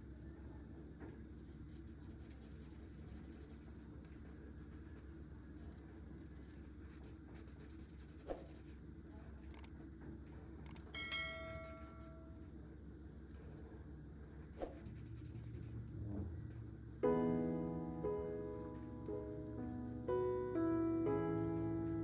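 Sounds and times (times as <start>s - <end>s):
marker scratching on paper: 1.7s - 5.0s, 6.4s - 8.8s, 14.4s - 15.8s
sharp clicks: 10.6s - 10.9s
bell-like note: 11.0s - 12.2s
soft piano music: 16.0s - 22.0s.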